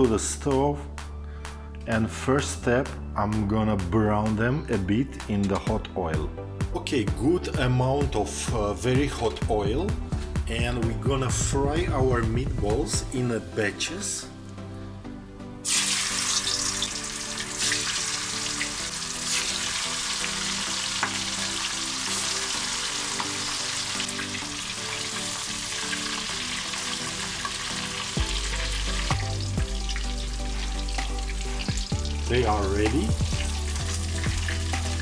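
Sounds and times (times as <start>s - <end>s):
meatballs sizzling in hot oil: 15.6s - 35.0s.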